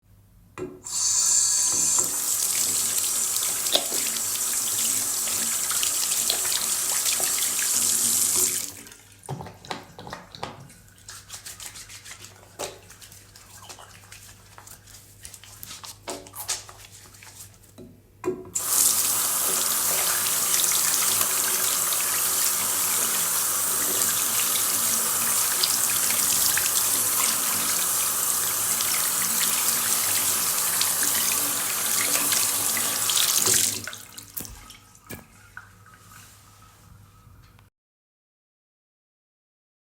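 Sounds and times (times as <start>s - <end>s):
tap running into sink: 0.6s - 10.7s, 17.8s - 35.4s
hands rubbing lather: 11.0s - 17.7s.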